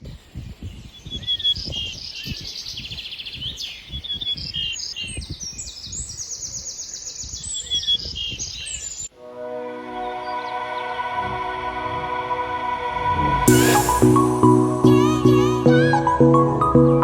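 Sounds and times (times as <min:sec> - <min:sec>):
songbirds singing: 0:00.0 - 0:09.1
low rumble: 0:10.6 - 0:15.6.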